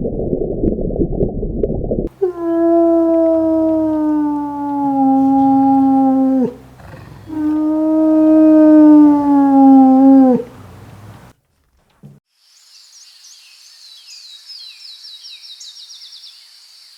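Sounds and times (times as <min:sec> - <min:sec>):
animal long drawn-out calls: 0:02.1 - 0:11.3.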